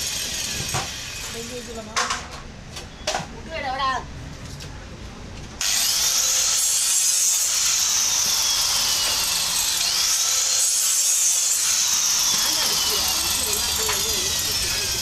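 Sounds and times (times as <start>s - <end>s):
power tool hissing and whining: 0.0s - 1.8s, 5.6s - 15.0s.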